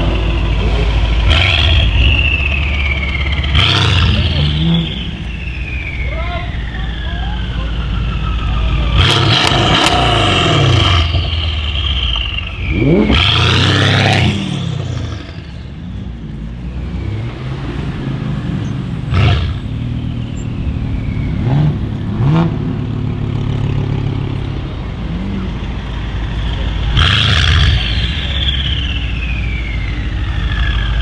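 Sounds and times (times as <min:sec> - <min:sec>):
car engine idling: 0:00.0 - 0:31.0
car engine revving: 0:00.0 - 0:31.0
engine blips: 0:00.0 - 0:31.0
high whistle sliding down: 0:01.4 - 0:09.0, 0:27.6 - 0:31.0.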